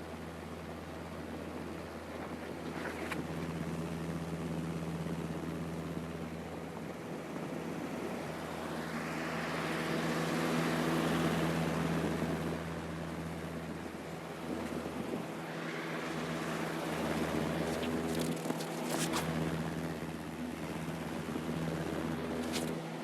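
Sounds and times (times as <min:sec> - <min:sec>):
low hum: 0:00.0 - 0:23.0
crackles: 0:17.6 - 0:19.3.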